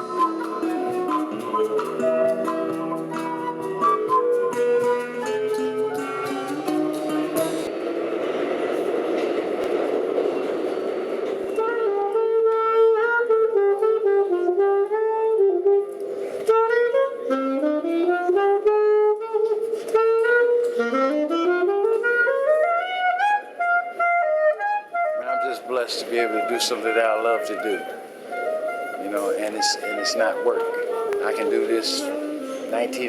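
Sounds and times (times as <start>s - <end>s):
saxophone playing jazz melody: 0.0s - 7.7s, 11.6s - 33.0s
broad noisy rush: 5.5s - 12.3s.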